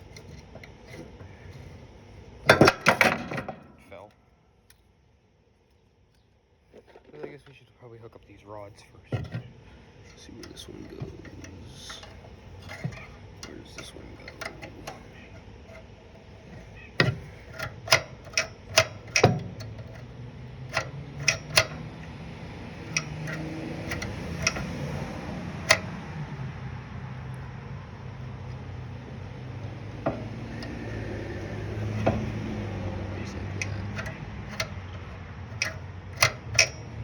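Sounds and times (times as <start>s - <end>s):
low steady rumble: 0.0s - 37.0s
metallic clicks and taps: 10.1s - 26.2s, 29.6s - 37.0s.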